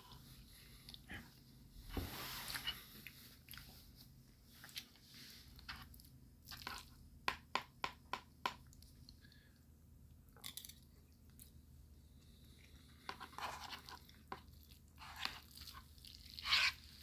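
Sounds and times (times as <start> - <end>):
person chewing noodles: 12.2 - 17.0.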